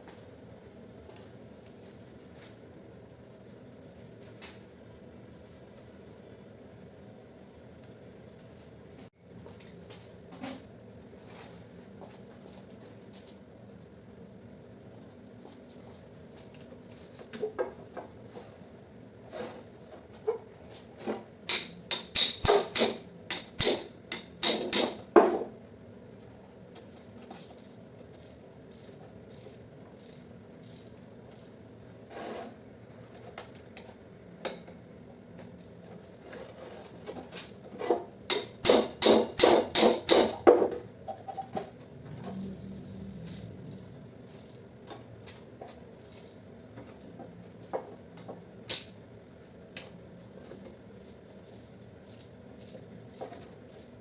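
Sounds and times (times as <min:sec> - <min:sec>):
hammer striking metal: 0:21.5 - 0:25.0, 0:38.3 - 0:40.4.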